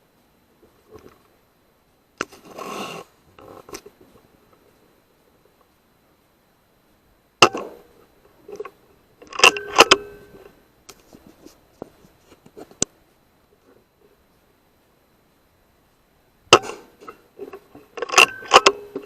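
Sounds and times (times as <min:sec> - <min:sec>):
sharp crack: 0:16.5 - 0:17.2.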